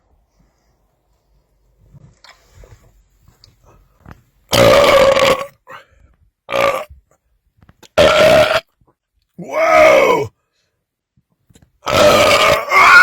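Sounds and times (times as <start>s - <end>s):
man belching loudly: 4.5s - 5.6s, 6.5s - 6.9s, 8.0s - 8.6s, 11.8s - 13.0s.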